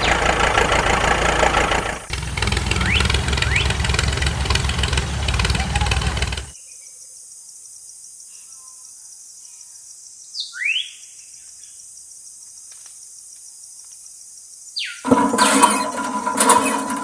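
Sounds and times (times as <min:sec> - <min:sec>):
bird chirp: 0:00.0 - 0:07.0.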